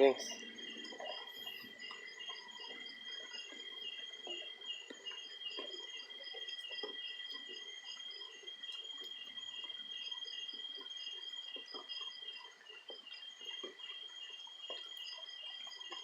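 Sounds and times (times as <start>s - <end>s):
insects trilling: 0.0s - 16.0s
soft ticks and patter: 0.0s - 16.0s.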